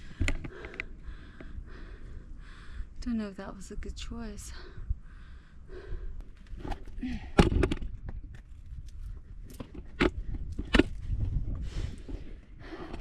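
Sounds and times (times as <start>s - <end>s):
breaths: 0.0s - 3.0s, 4.4s - 7.5s, 11.6s - 13.0s
low wind rumble on microphone: 0.0s - 13.0s.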